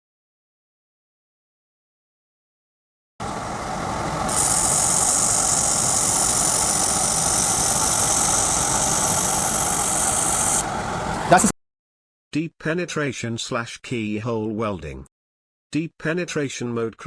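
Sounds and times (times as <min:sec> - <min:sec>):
welding equipment low rumble: 0:03.2 - 0:11.3
loud high hiss: 0:03.3 - 0:11.4.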